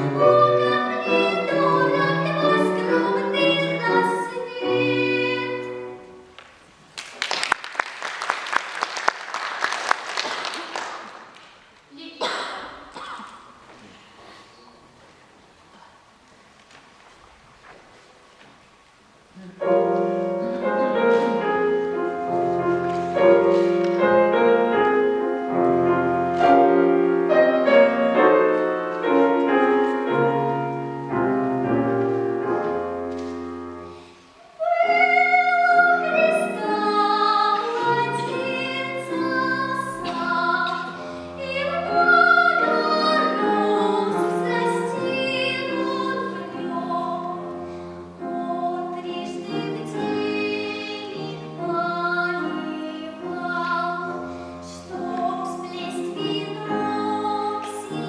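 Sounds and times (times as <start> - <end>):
person singing with vibrato: 0.0 - 6.2, 34.4 - 58.0
piano accompaniment: 0.0 - 6.6, 19.5 - 58.0.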